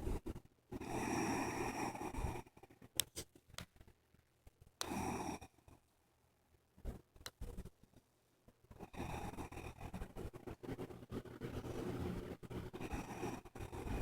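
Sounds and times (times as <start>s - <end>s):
sleeping person breathing noisily: 0.0s - 2.8s, 4.8s - 5.8s, 8.7s - 14.0s.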